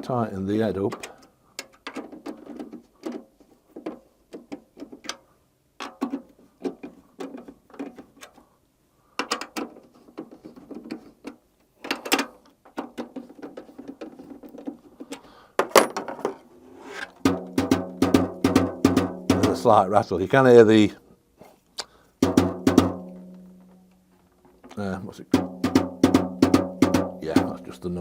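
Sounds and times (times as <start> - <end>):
metal hardware rattling: 15.6 - 16.4
drum tension rods clicking: 17.1 - 19.8, 22.2 - 28.0.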